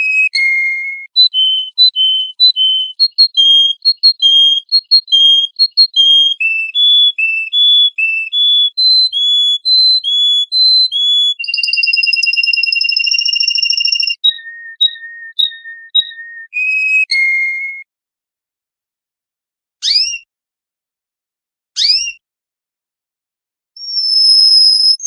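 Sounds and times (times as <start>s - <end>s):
songbird singing: 1.1s - 16.5s.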